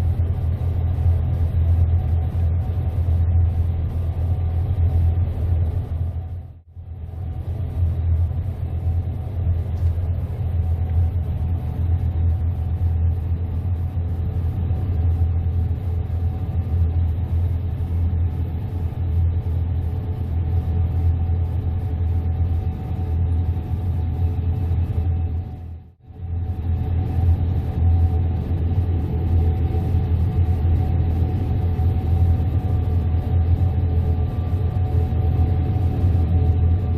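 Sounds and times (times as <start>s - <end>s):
combine harvester drone: 0.0s - 36.9s.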